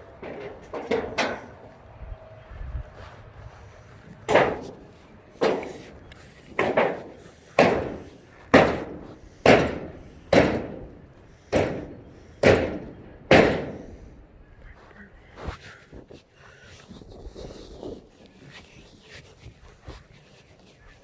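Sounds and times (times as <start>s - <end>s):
heavy ringing striking blows: 4.3s - 14.3s.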